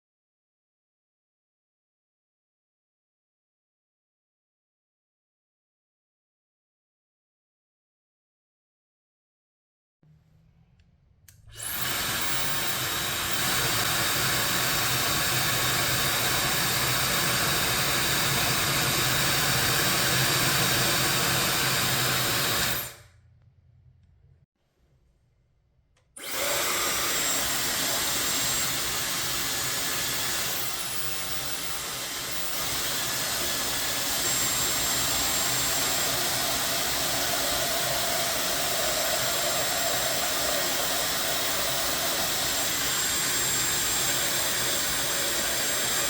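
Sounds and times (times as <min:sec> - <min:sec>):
hair dryer blowing air: 0:11.5 - 0:23.0, 0:26.2 - 0:46.0.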